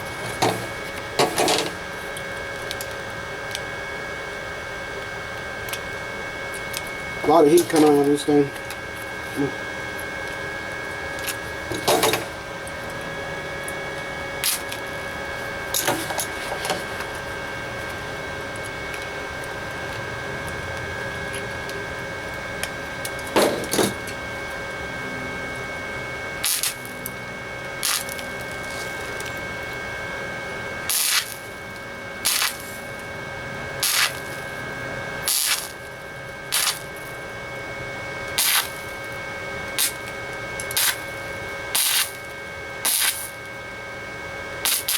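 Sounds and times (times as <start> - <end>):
welding arc bursts: 0.0 - 2.2, 14.4 - 14.9, 26.4 - 27.1, 27.8 - 29.3, 30.9 - 33.1, 33.8 - 34.6, 35.2 - 37.3, 38.3 - 39.1, 39.7 - 43.4, 44.6 - 44.9
welder humming: 0.0 - 44.9.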